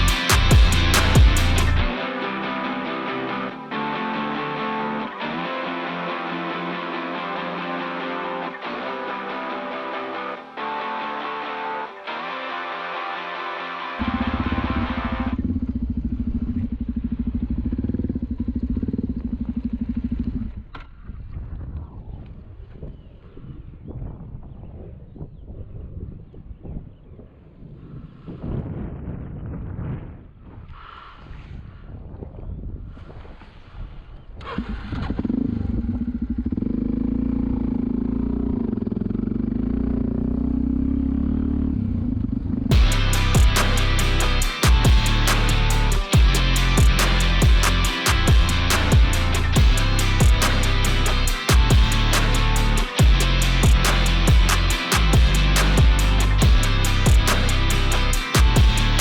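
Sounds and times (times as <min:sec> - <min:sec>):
motorcycle engine running: 0:00.0 - 0:01.9, 0:14.0 - 0:21.3, 0:34.6 - 0:59.0
wind on microphone: 0:21.1 - 0:34.4.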